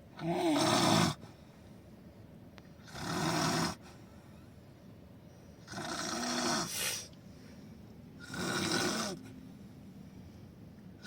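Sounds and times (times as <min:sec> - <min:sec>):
loud snoring: 0:00.2 - 0:01.2, 0:02.9 - 0:03.8, 0:05.7 - 0:06.8, 0:08.2 - 0:09.2.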